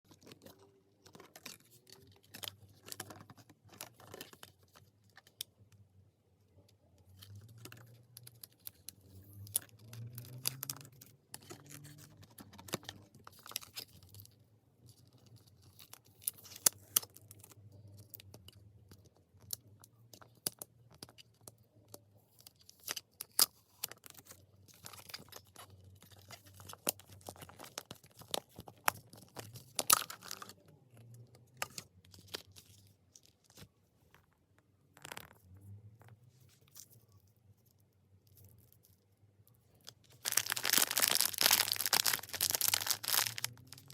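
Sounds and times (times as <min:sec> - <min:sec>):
wrapper crinkling and tearing: 0:40.0 - 0:43.9.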